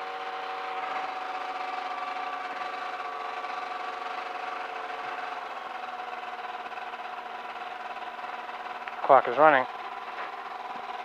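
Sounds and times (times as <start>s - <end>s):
aircraft piston engine idling: 0.6s - 11.0s.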